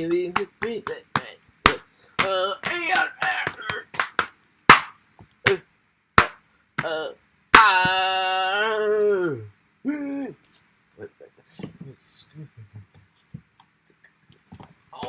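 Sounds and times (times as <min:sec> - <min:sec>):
cartoon slaps and hits: 0:01.7 - 0:05.6.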